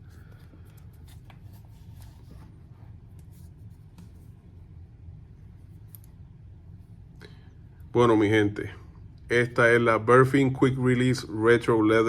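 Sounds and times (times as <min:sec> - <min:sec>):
soft rubbing of leather band: 0:00.0 - 0:04.6
steady low hum: 0:00.0 - 0:12.0.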